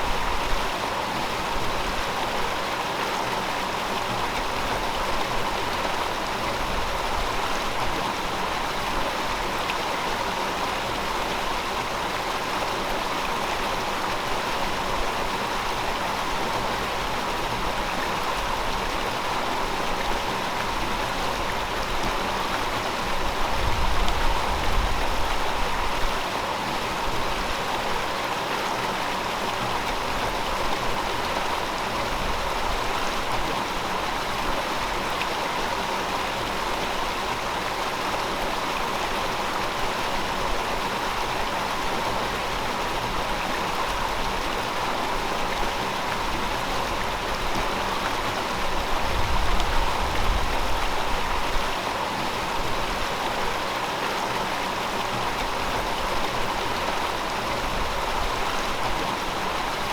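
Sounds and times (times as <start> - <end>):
river water flowing over rocks: 0.0 - 59.9.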